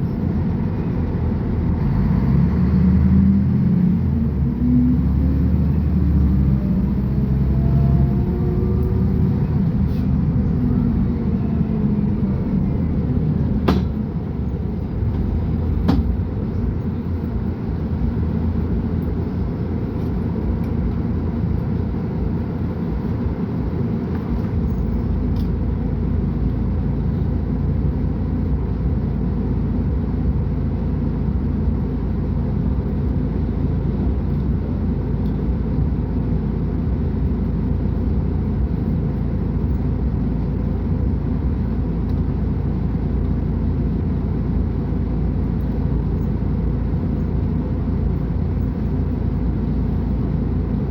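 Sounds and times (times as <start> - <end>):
bus diesel engine rumbling: 0.0 - 50.9.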